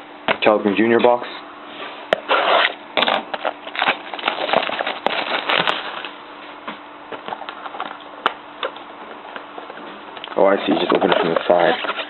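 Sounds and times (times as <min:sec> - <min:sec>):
packaging crinkling and tearing: 0:02.4 - 0:06.2.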